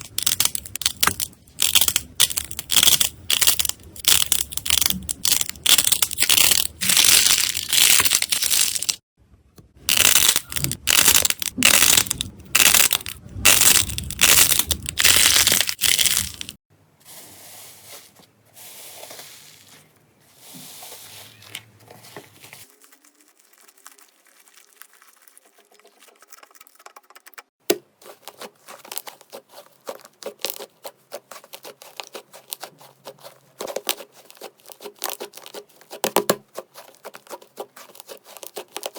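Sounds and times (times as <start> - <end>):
slime crackling and popping: 0.0 - 9.0, 9.9 - 16.6
slime squishing: 0.0 - 9.0, 9.9 - 16.6, 21.0 - 27.1, 28.0 - 38.9.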